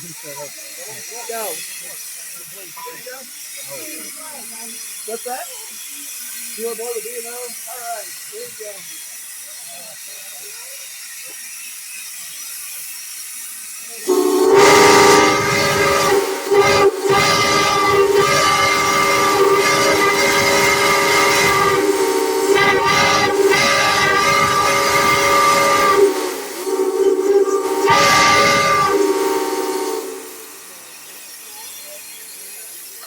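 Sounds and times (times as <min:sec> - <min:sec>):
faint hiss: 0:00.0 - 0:33.0
train whistle blast: 0:14.0 - 0:30.8.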